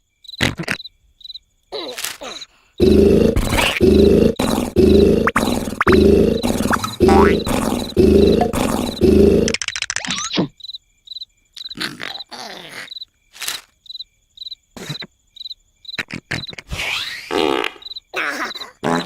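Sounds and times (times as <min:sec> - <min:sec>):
crickets chirping: 0:00.0 - 0:18.9
cartoon noises: 0:01.7 - 0:10.5, 0:16.0 - 0:19.0
loud rough roar: 0:02.8 - 0:09.6.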